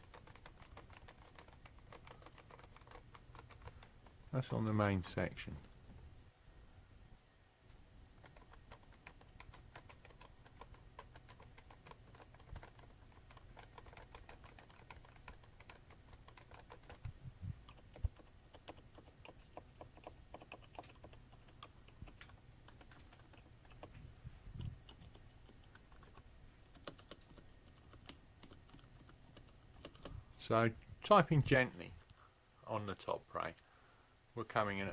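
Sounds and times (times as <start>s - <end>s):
soft keyboard typing: 0.0s - 4.4s, 8.1s - 30.2s.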